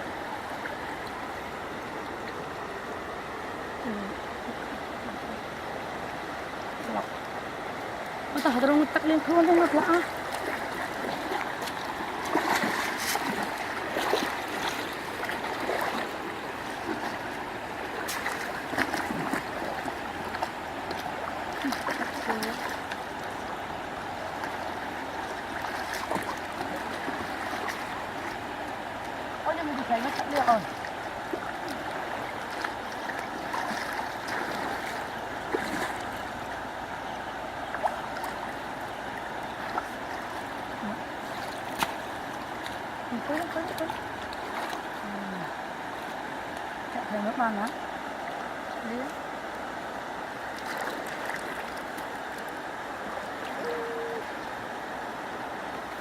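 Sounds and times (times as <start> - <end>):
water trickling and splashing: 0.0 - 56.0
water running: 8.3 - 16.1.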